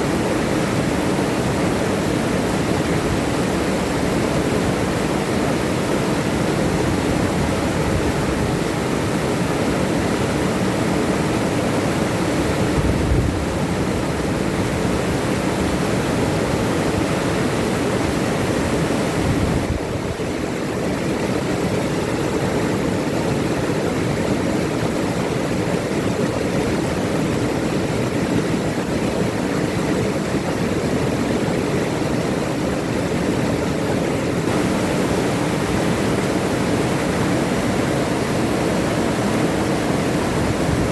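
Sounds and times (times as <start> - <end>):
river rushing over rocks: 30.2 - 40.9.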